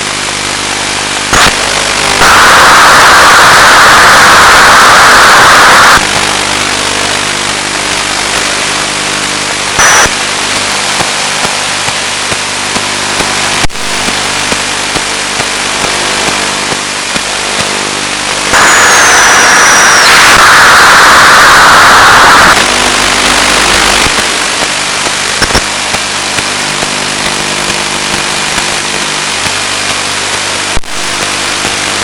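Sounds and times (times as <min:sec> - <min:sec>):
static hiss: 0:00.0 - 0:32.0
steady buzzing hum: 0:00.0 - 0:32.0
sharp click: 0:25.4 - 0:26.0.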